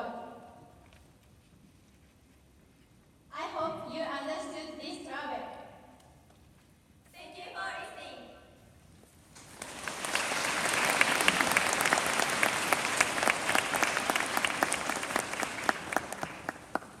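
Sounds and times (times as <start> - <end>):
audience applauding: 9.4 - 17.0.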